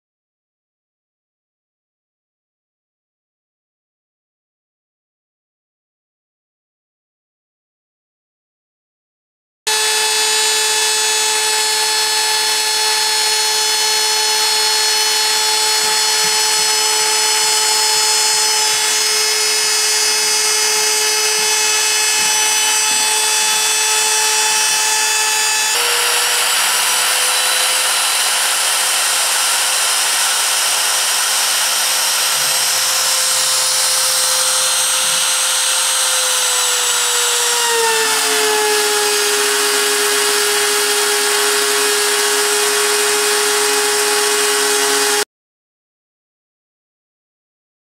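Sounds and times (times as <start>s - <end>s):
router spindle cutting wood: 9.7s - 45.3s.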